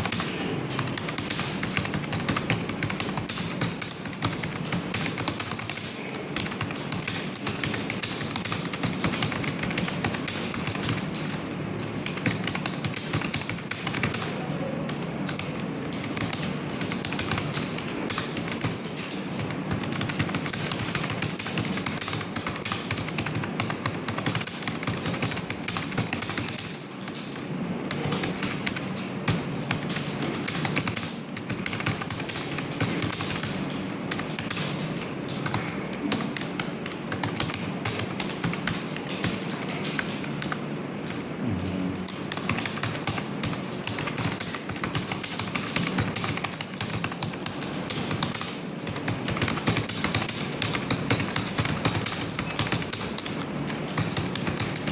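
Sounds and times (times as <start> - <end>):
typing on computer keyboard: 0.0 - 54.9.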